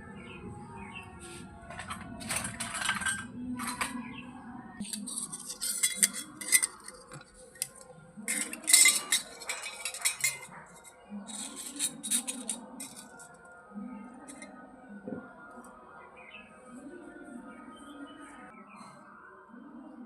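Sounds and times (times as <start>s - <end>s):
toy kitchenware clinking: 1.7s - 4.1s, 4.8s - 13.4s, 14.3s - 14.5s.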